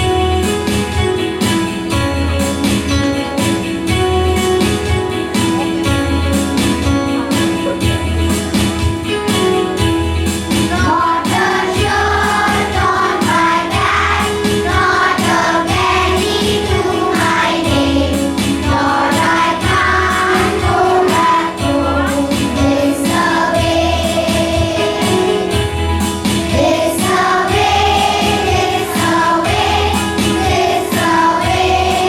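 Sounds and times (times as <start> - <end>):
instrumental accompaniment with low pulse: 0.0 - 32.0
children and women singing: 10.7 - 25.5, 26.4 - 32.0.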